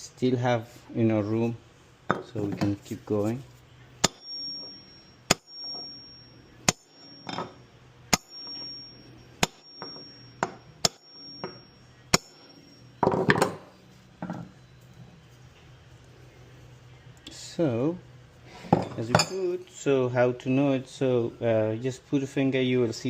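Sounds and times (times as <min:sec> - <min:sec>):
hammer striking metal: 0:04.0 - 0:13.7, 0:18.7 - 0:19.5.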